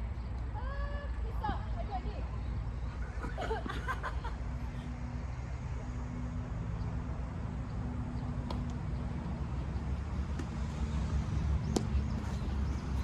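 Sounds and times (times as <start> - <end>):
steady low hum: 0.0 - 13.0
tennis balls struck by rackets: 8.3 - 13.0.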